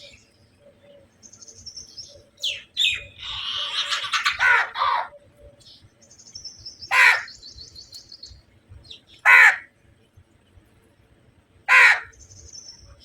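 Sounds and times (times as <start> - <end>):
bird trilling: 2.4 - 5.2, 6.8 - 7.5, 11.7 - 12.2
crow cawing: 3.2 - 5.1, 6.9 - 7.4, 9.2 - 9.7, 11.7 - 12.2.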